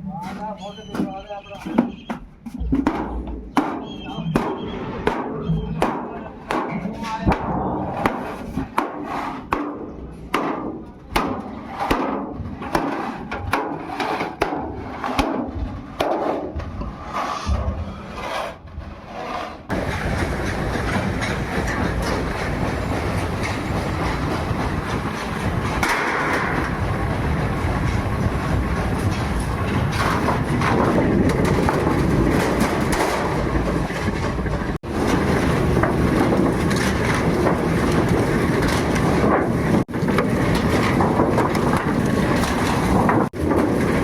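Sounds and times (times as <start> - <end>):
hammer blows on sheet steel: 1.0 - 18.0
loud machine noise: 19.7 - 44.0.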